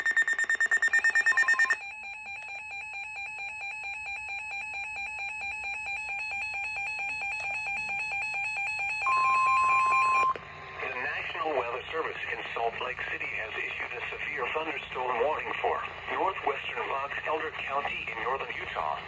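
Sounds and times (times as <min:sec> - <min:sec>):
rapid high-pitched beeping: 0:00.0 - 0:01.8
steady single alarm tone: 0:00.0 - 0:10.4
warbling two-tone alarm: 0:00.0 - 0:10.4.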